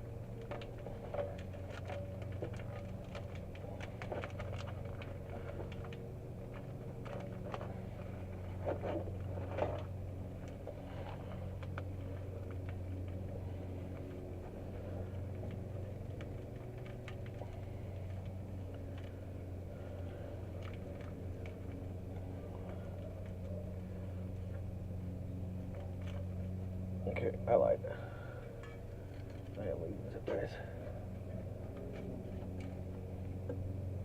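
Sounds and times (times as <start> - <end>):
low mechanical hum: 0.0 - 34.0.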